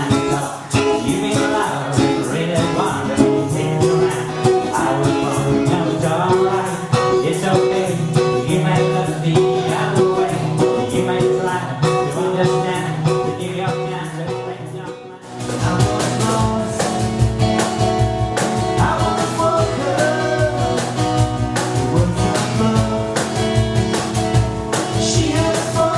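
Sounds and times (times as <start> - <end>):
bass: 0.0 - 25.9
live acoustic guitar music: 0.0 - 25.9.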